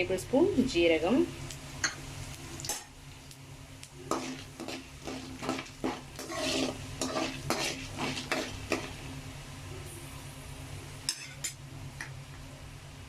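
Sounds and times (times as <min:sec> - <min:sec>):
spices sizzling in hot oil: 0:00.0 - 0:12.4
spoon stirring and scraping in a pan: 0:04.0 - 0:09.1.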